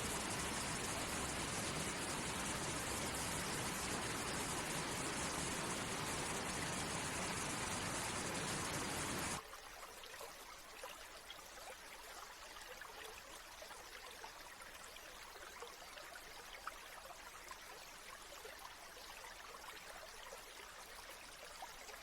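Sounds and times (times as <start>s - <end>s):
loud steady hiss: 0.0s - 9.4s
stream trickling: 0.0s - 22.0s.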